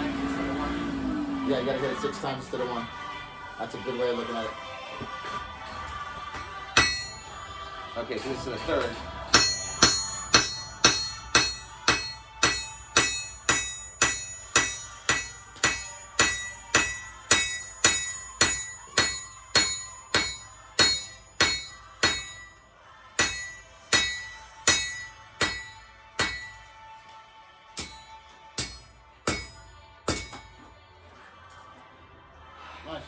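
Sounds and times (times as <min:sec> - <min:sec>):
hammer striking steel on anvil: 0:06.3 - 0:07.6, 0:08.2 - 0:22.6, 0:23.2 - 0:27.0, 0:27.8 - 0:30.7.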